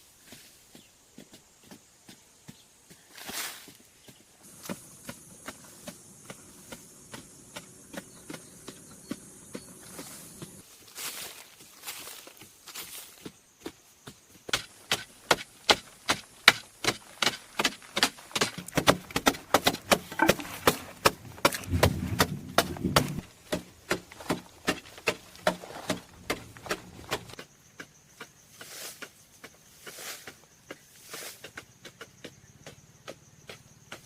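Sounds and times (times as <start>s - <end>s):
hand tool striking: 14.5s - 27.4s
dull heavy thudding: 16.5s - 27.4s.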